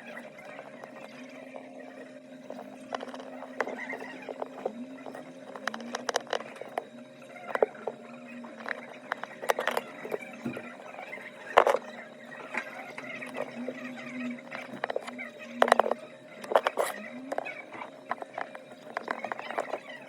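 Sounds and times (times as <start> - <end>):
faint low hum: 0.0 - 20.0
hand tools clicking on phone parts: 2.9 - 6.8, 14.6 - 19.9.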